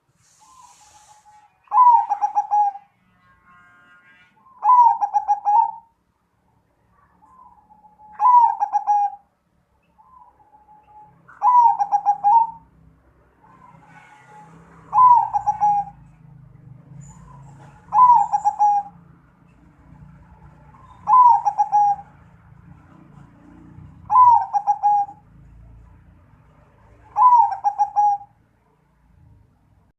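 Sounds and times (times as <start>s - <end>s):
dove cooing: 1.7s - 2.9s, 4.6s - 5.9s, 7.3s - 9.2s, 11.3s - 12.6s, 14.9s - 16.0s, 17.1s - 19.0s, 20.8s - 22.2s, 22.8s - 25.3s, 27.0s - 28.3s.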